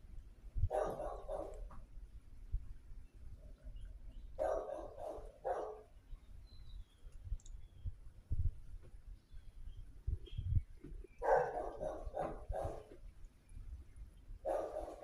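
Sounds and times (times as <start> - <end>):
dog barking: 0.7 - 1.7, 4.4 - 5.9, 11.2 - 12.9, 14.4 - 15.0.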